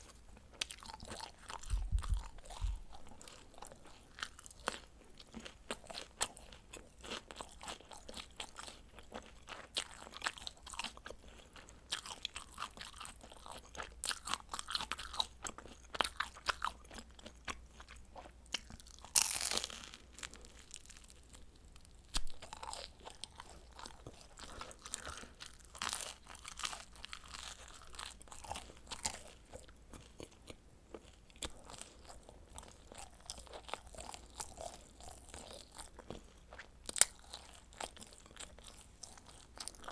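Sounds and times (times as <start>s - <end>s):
crunching and chewing pizza: 0.0s - 39.9s.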